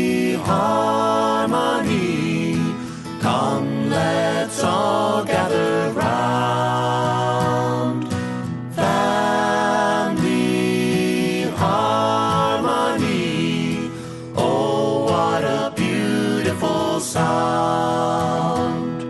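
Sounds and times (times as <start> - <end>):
voices singing in harmony: 0.0 - 19.0.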